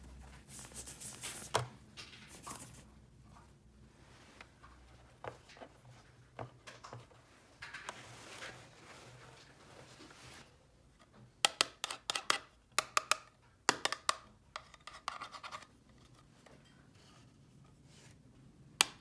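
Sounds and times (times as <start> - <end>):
soft scraping rub: 0.0 - 1.6, 2.3 - 2.9.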